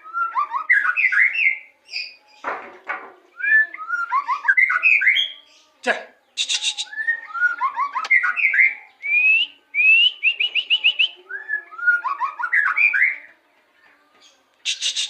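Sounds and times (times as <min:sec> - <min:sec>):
songbird whistling: 0:03.4 - 0:05.4, 0:06.4 - 0:13.3, 0:14.6 - 0:15.0.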